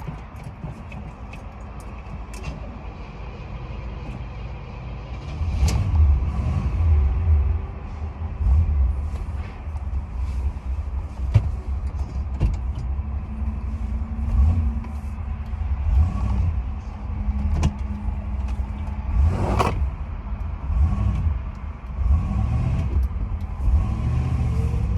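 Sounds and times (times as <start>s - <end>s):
car engine rumbling: 8.3s - 22.0s.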